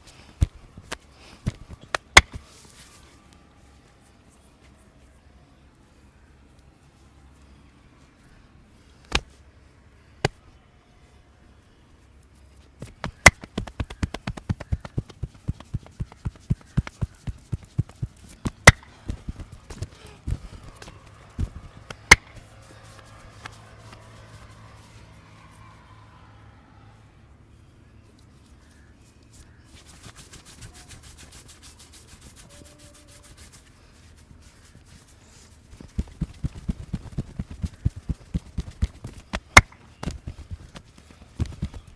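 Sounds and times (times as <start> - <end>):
rhythmic hand strikes on skin: 12.8 - 24.6, 35.7 - 41.9.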